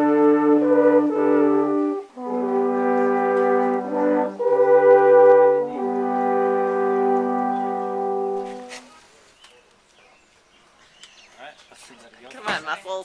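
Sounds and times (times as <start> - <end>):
alphorn long held notes: 0.0 - 9.0.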